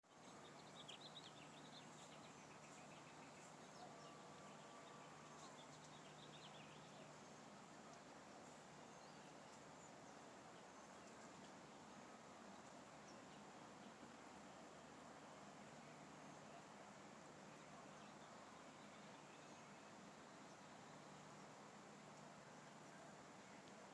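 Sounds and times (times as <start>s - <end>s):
faint outdoor ambience: 0.0s - 23.9s
faint bird chirps: 0.1s - 8.0s.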